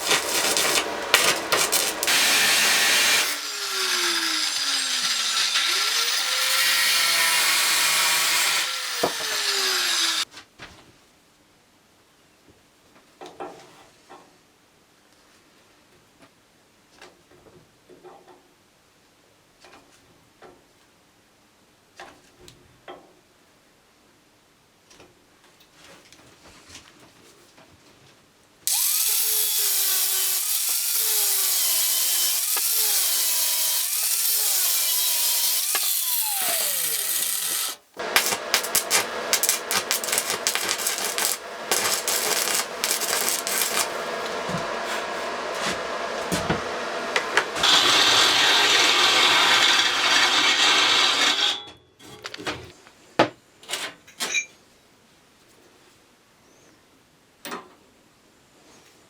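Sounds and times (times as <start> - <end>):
electric power tool running: 0.0 - 10.2, 28.7 - 50.3.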